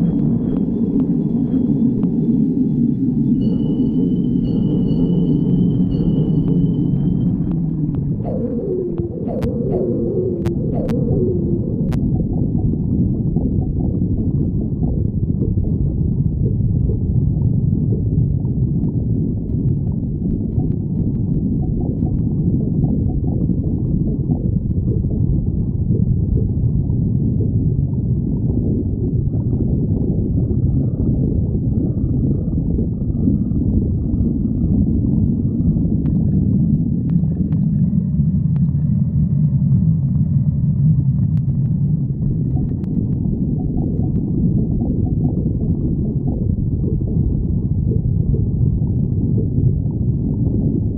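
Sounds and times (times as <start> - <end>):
stomach growling: 7.4 - 50.9.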